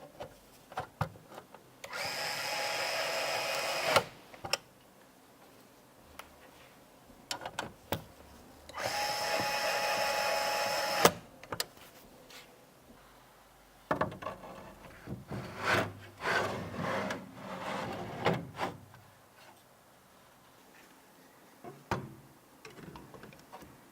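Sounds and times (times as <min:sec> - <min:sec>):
electric screwdriver running: 0:01.9 - 0:04.1, 0:08.8 - 0:11.2.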